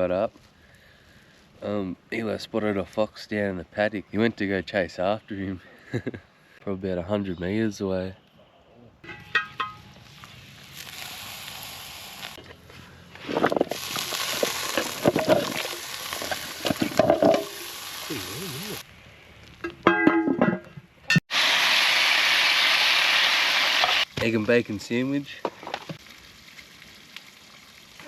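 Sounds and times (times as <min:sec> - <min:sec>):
bacon and eggs sizzling in a pan: 0:10.0 - 0:12.4, 0:13.7 - 0:18.8, 0:21.3 - 0:24.1, 0:25.9 - 0:28.0.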